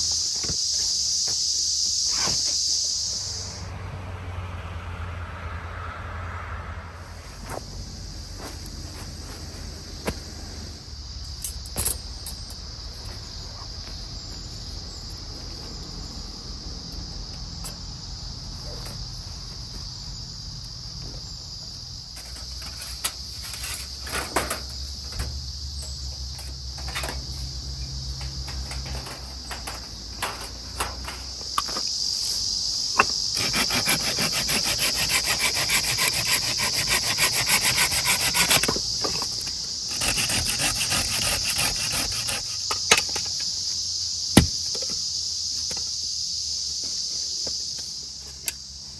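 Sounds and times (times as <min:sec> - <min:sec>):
insects chirring: 0:00.0 - 0:04.8, 0:06.7 - 0:48.9
hand saw cutting wood: 0:33.3 - 0:43.2
wood knocking: 0:44.4 - 0:45.0.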